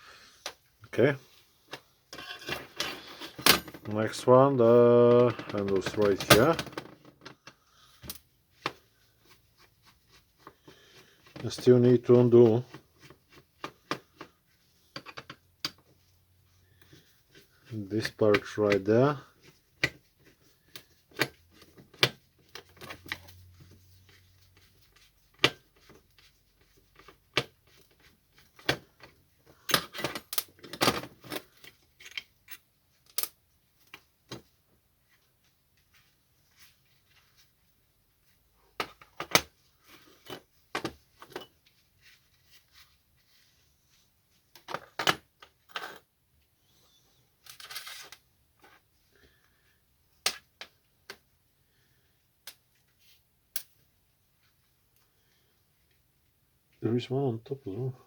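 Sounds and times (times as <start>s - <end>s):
metal tools and parts clinking: 2.1s - 3.9s.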